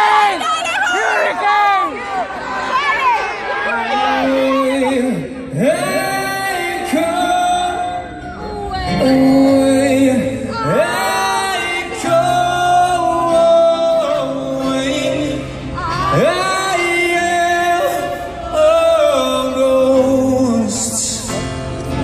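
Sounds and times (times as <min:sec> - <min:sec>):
person singing unaccompanied: 0:04.2 - 0:21.2.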